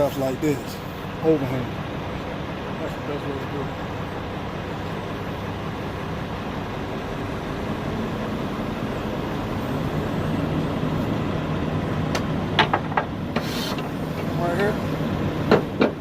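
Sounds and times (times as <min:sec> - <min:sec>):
vehicle engine running: 0:00.0 - 0:16.0
sharp knocks: 0:12.1 - 0:13.5, 0:15.5 - 0:16.0.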